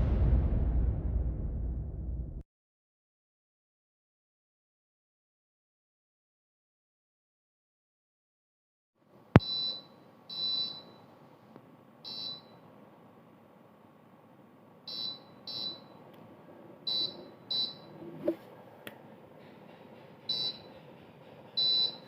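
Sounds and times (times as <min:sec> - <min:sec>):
alarm buzzer beeping: 0:09.4 - 0:11.0, 0:12.1 - 0:12.6, 0:14.9 - 0:16.0, 0:16.9 - 0:18.0, 0:20.3 - 0:20.7, 0:21.6 - 0:22.0.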